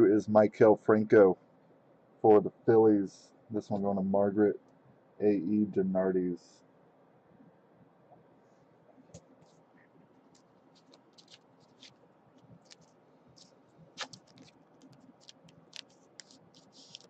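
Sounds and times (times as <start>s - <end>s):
light clicks and scratches at desk: 8.1s - 17.0s.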